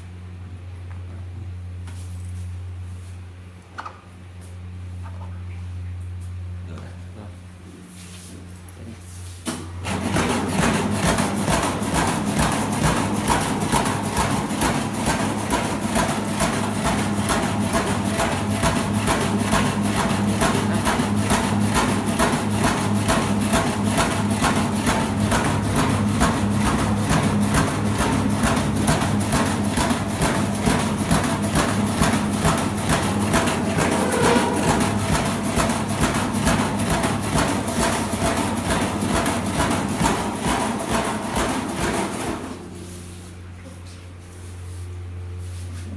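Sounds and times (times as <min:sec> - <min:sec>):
dough-cutting machine clattering: 0:09.8 - 0:42.7.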